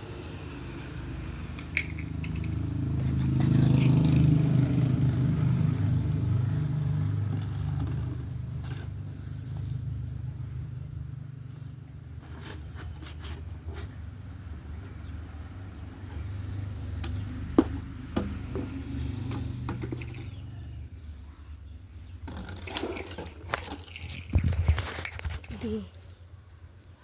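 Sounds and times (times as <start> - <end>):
fingers rustling through hair: 22.6 - 26.1.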